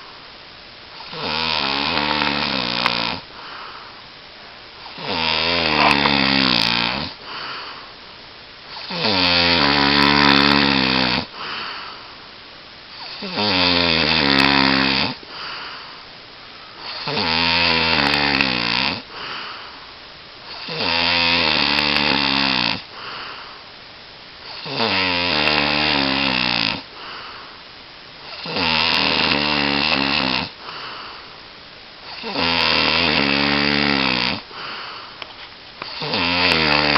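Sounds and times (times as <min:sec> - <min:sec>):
person snoring: 0:01.0 - 0:03.7, 0:04.8 - 0:07.7, 0:08.7 - 0:12.0, 0:12.9 - 0:15.9, 0:16.8 - 0:19.7, 0:20.5 - 0:23.5, 0:24.5 - 0:27.4, 0:28.3 - 0:31.2, 0:32.1 - 0:35.1, 0:35.8 - 0:36.9
soft breath: 0:03.3 - 0:04.6, 0:07.2 - 0:08.0, 0:11.3 - 0:12.3, 0:15.2 - 0:17.1, 0:19.1 - 0:20.0, 0:22.9 - 0:23.7, 0:26.9 - 0:27.7, 0:30.6 - 0:31.4, 0:34.5 - 0:35.5.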